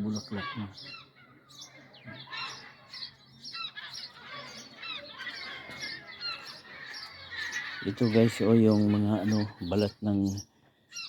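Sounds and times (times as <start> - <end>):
seagulls calling: 0.0 - 11.0.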